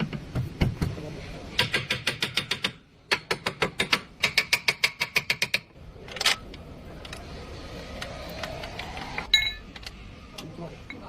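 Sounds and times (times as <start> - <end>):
steady hum with rising tone: 5.8 - 11.0.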